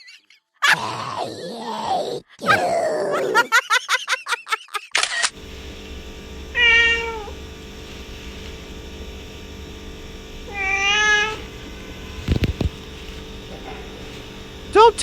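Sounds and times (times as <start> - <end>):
cat meowing: 6.6 - 7.3, 10.5 - 11.4.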